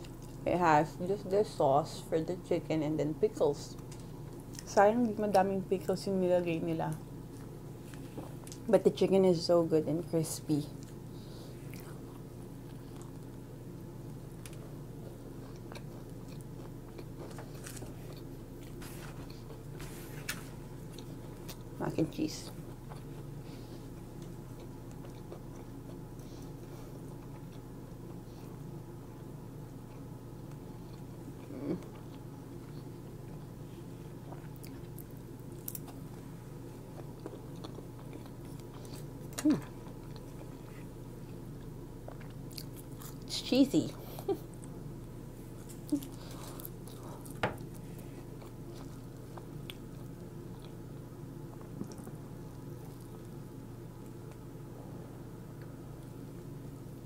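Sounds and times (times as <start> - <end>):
chewing crispy food: 0.0 - 0.5, 10.6 - 13.4, 14.0 - 43.4, 44.0 - 54.5
steady low hum: 0.0 - 57.0.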